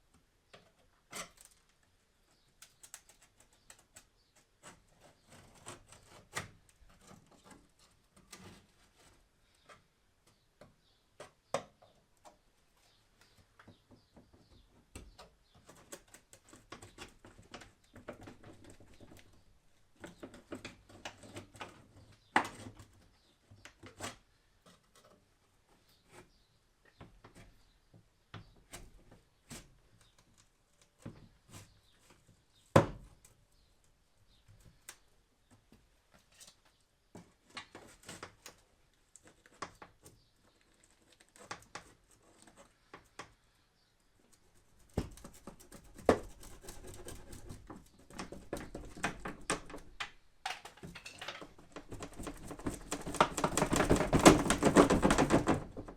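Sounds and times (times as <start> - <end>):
hand tools and metal parts clicking: 50.5 - 52.1.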